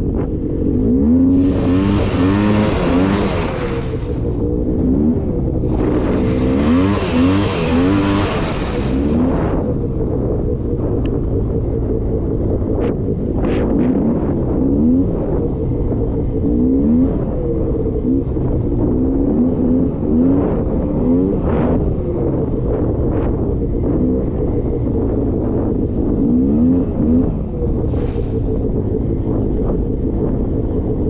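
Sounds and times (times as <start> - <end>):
atv engine revving: 0.2 - 31.0
loud rushing noise: 1.3 - 10.0, 27.8 - 29.0.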